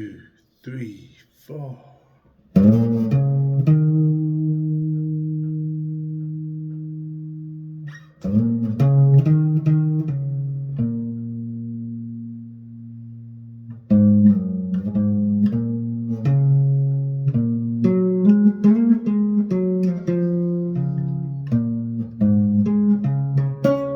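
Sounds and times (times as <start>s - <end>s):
guitar chords and picked notes: 2.6s - 23.9s.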